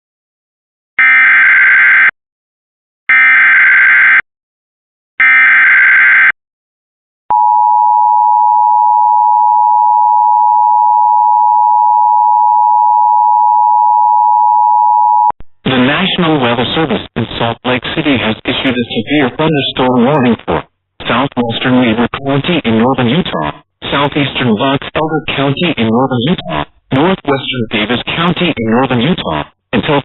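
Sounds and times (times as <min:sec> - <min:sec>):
steady attention tone: 0:18.5 - 0:29.2.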